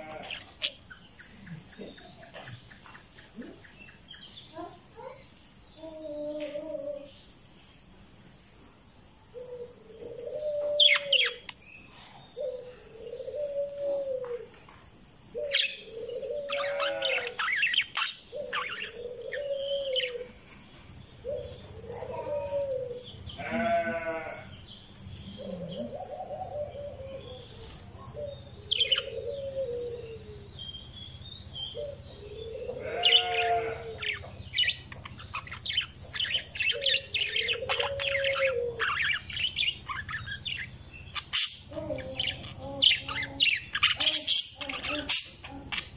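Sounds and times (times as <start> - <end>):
parakeets chirping and squawking: 0.0 - 1.2, 10.4 - 11.4, 15.5 - 20.3, 26.0 - 29.8, 31.7 - 45.9.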